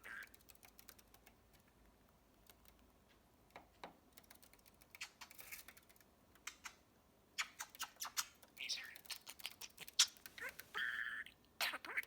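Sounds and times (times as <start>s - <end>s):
budgerigar clicking: 7.4s - 11.0s
budgerigar faint chirps: 10.0s - 11.2s.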